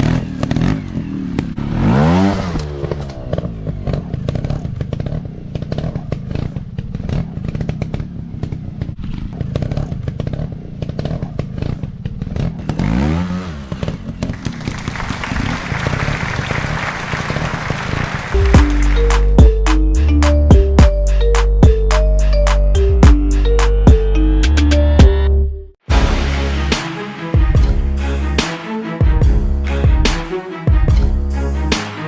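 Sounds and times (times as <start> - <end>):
dirt bike engines revving: 0.0 - 25.0.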